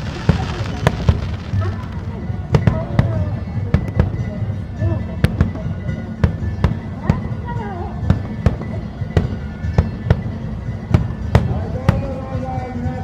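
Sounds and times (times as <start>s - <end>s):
fireworks bangs: 0.0s - 3.2s
low rumble of explosions: 0.0s - 4.1s.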